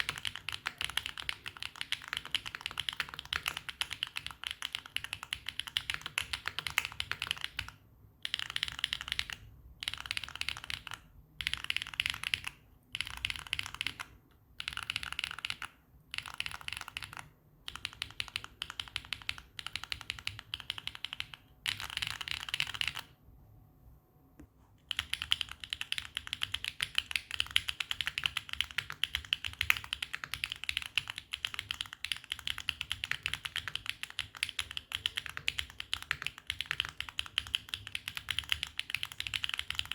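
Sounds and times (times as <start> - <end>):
mechanical keyboard typing: 0.0 - 23.2, 24.8 - 39.9.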